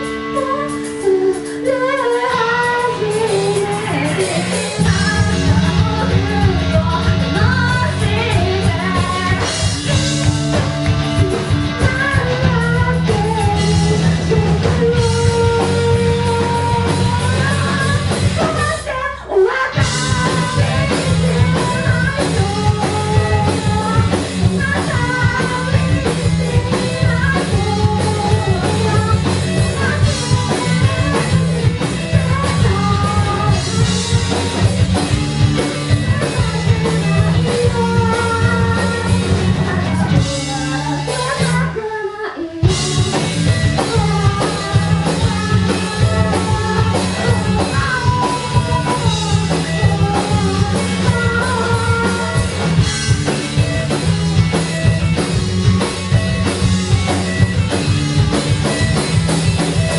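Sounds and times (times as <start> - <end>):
person singing lead vocal: 0.0 - 55.3
rock band playing live: 0.0 - 59.9.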